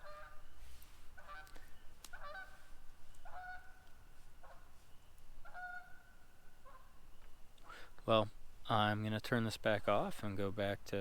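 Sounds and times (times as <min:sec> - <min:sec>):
geese honking: 0:00.0 - 0:00.4, 0:01.2 - 0:04.7, 0:05.4 - 0:07.0.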